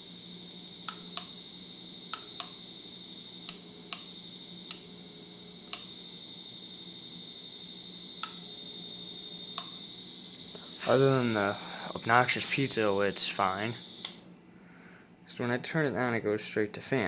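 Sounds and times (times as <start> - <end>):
ceiling fan high-pitched whine: 0.0 - 17.0
sharp clicks: 2.1 - 2.6, 14.0 - 14.2.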